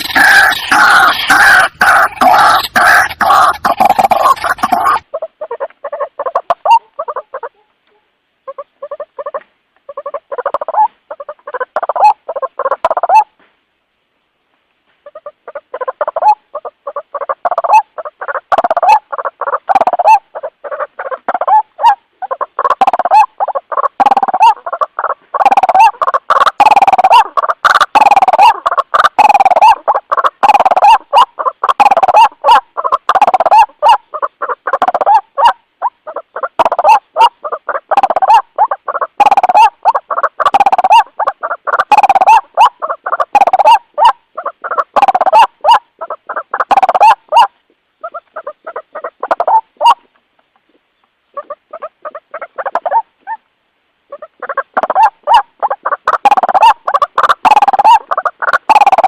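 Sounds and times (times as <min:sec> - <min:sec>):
bird croaking calls: 0:00.0 - 0:13.3, 0:54.1 - 0:59.0.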